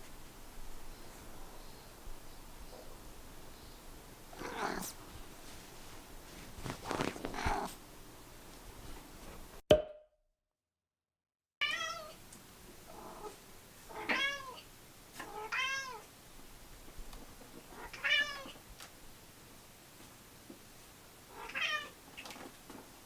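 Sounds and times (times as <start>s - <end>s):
cat meowing: 4.4s - 4.9s, 11.6s - 12.2s, 13.9s - 14.6s, 15.2s - 16.0s, 17.7s - 18.6s, 21.3s - 22.0s.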